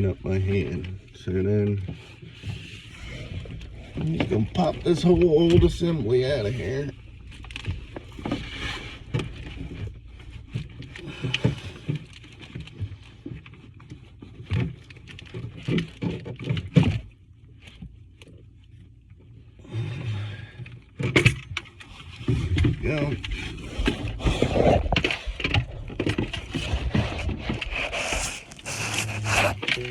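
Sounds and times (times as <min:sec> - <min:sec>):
pipe knocking and scraping: 0:01.8 - 0:11.9, 0:22.0 - 0:29.9.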